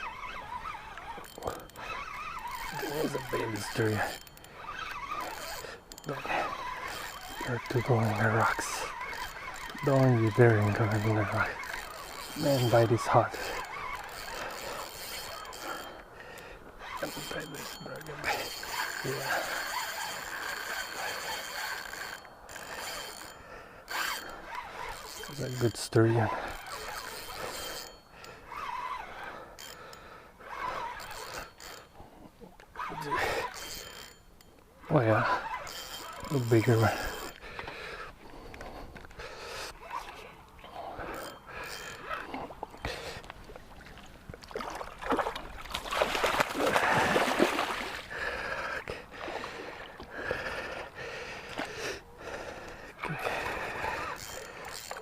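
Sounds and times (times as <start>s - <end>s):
person breathing hard: 37.1s - 39.8s, 48.0s - 54.8s
water splashing and sloshing: 39.8s - 50.3s.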